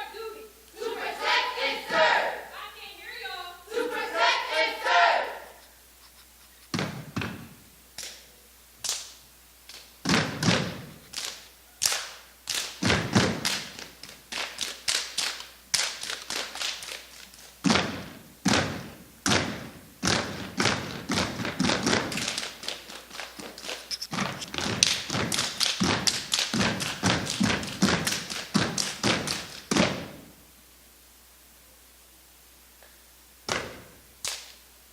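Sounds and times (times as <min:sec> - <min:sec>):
rhythmic foot stomps: 0:06.7 - 0:07.6, 0:09.7 - 0:11.0, 0:12.5 - 0:16.6, 0:17.6 - 0:30.3
hand slaps: 0:08.0 - 0:16.2, 0:33.5 - 0:34.6.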